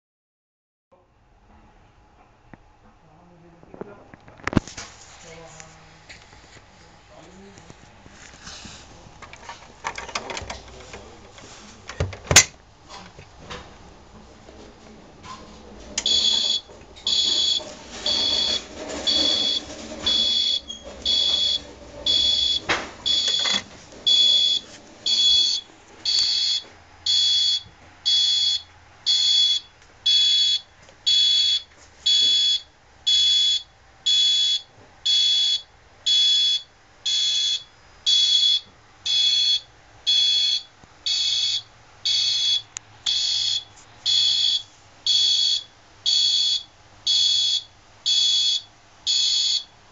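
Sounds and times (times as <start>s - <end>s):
fire alarm pulsed beeping: 16.0s - 49.7s.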